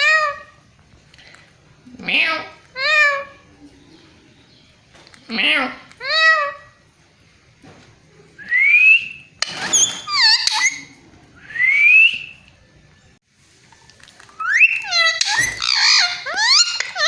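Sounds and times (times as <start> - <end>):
parrot whistling: 8.4 - 12.4, 14.4 - 17.0
parrot harsh chattering calls: 9.6 - 11.0, 14.4 - 17.0.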